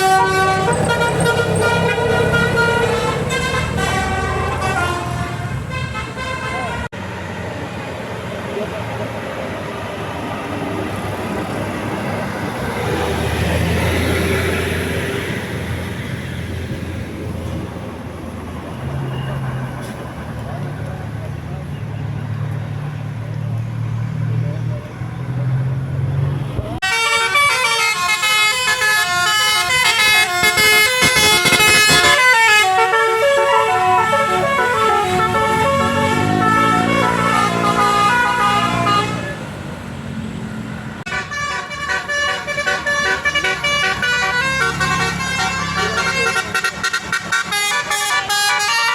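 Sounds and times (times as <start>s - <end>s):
multi-trumpet air horn melody: 0.0s - 6.9s, 26.8s - 39.4s, 41.1s - 48.9s
bus engine and road noise: 0.0s - 48.9s.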